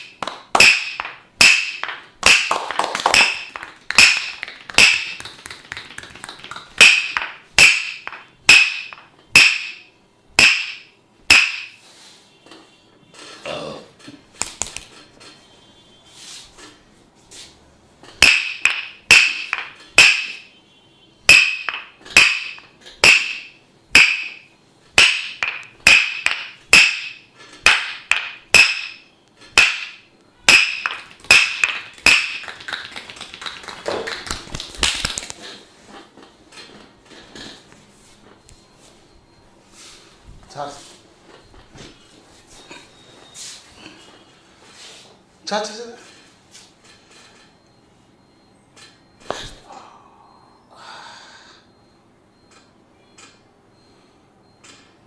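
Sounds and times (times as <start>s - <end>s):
percussive massage slapping hits: 0.0s - 11.8s, 14.3s - 14.9s, 18.2s - 20.5s, 21.3s - 29.0s, 29.6s - 35.4s
soft rubbing: 16.1s - 17.7s.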